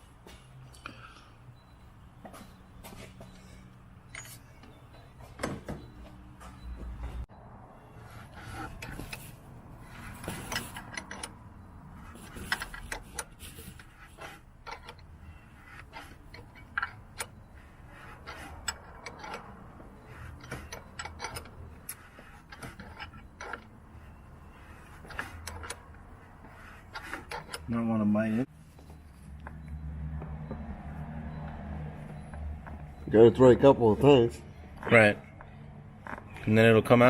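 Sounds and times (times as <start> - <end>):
metal hand tools clicking and scraping: 8.0 - 28.5.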